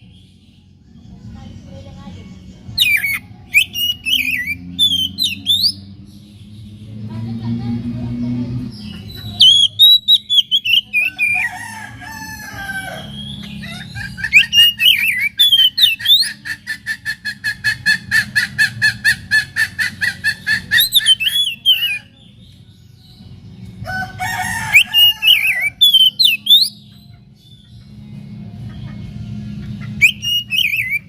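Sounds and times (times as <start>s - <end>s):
bird singing whistled phrases: 2.8s - 5.8s, 9.3s - 11.4s, 14.3s - 16.4s, 20.5s - 22.1s, 24.7s - 26.8s, 30.0s - 31.0s.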